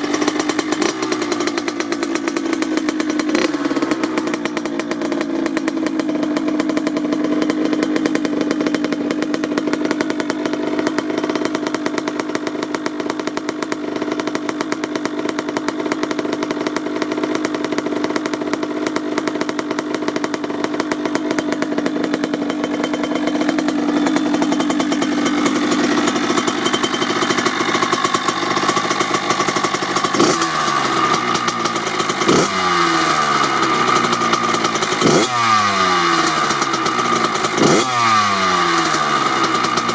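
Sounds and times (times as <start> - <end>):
two-stroke engine idling and revving: 0.0 - 39.9.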